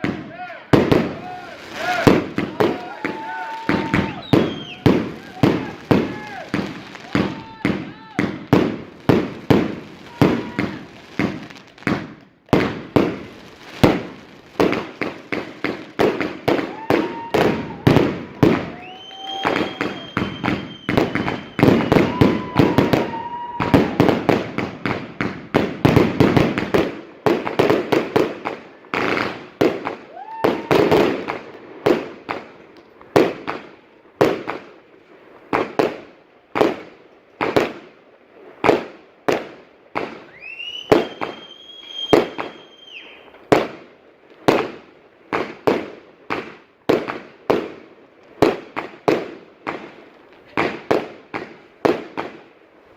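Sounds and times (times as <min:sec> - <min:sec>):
fireworks bangs and crackling: 0:00.0 - 0:52.9
rising firework whistles: 0:01.0 - 0:11.6, 0:16.2 - 0:24.9, 0:29.2 - 0:31.3, 0:40.1 - 0:43.5.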